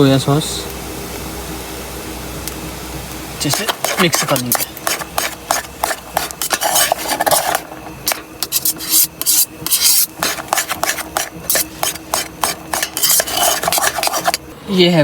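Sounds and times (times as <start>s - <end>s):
spatula scraping a pan: 3.4s - 14.5s.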